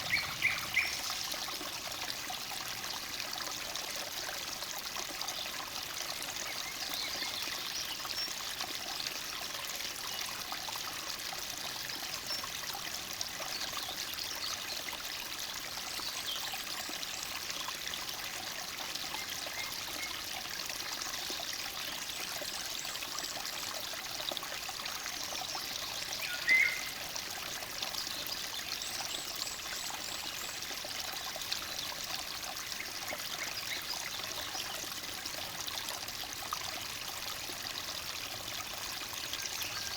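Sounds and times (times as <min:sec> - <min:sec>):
loud bird chirp: 0:00.0 - 0:01.2
faint birdsong: 0:00.0 - 0:01.5, 0:25.3 - 0:27.0
stream burbling: 0:00.0 - 0:39.9.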